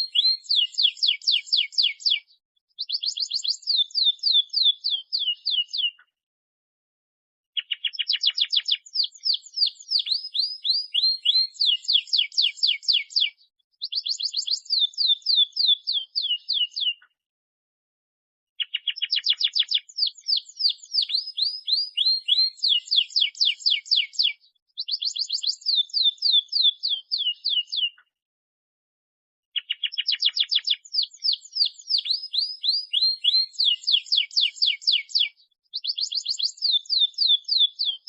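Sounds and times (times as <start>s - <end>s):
canary singing trills: 0.0s - 6.0s, 7.6s - 17.1s, 18.6s - 28.0s, 29.6s - 38.0s.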